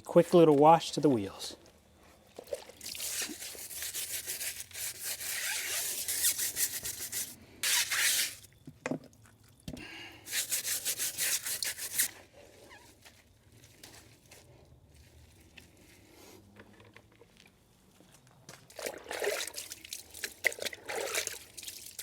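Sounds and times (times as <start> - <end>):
hand scrubbing tire: 2.8 - 8.5, 10.2 - 12.8.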